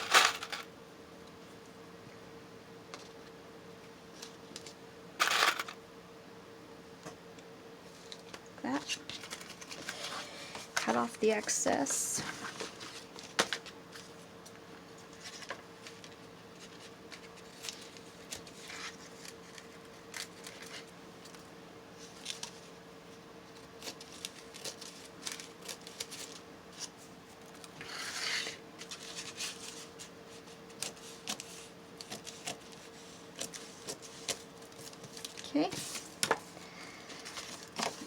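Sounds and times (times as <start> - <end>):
paper rustling: 15.0 - 21.4, 23.6 - 36.4, 37.1 - 38.0
scissors snipping paper: 30.7 - 35.7.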